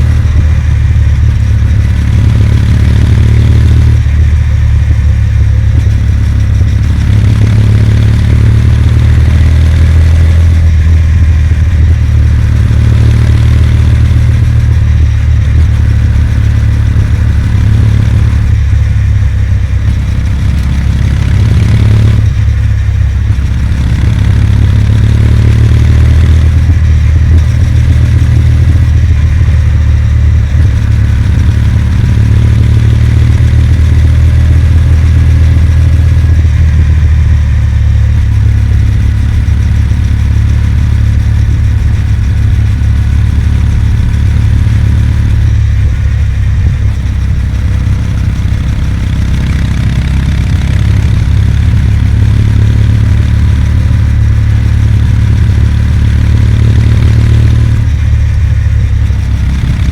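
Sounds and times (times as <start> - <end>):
motorcycle engine running: 0.0 - 59.9
wind rumble on microphone: 3.8 - 7.4, 41.0 - 47.6.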